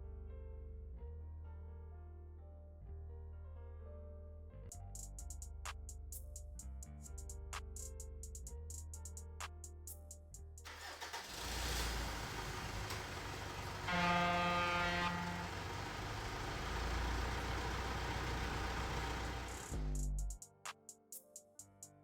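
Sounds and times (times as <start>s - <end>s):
vehicle engine rumbling: 10.7s - 20.4s
vehicle horn: 12.9s - 16.7s.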